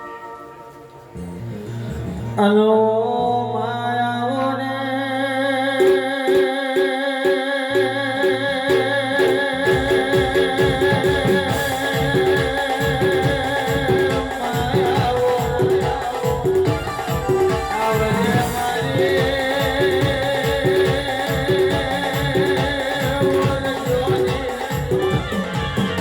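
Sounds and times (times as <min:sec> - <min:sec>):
steady drum beat: 0:05.8 - 0:26.0.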